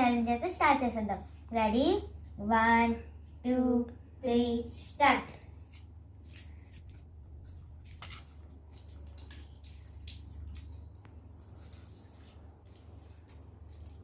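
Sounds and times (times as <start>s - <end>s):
steady low hum: 0.0s - 14.0s
wet chewing: 5.7s - 14.0s.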